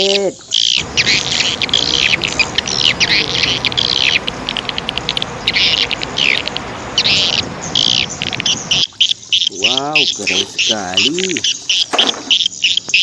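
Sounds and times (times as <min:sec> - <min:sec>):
birds chirping: 0:00.0 - 0:13.0
steady rushing noise: 0:00.8 - 0:08.8.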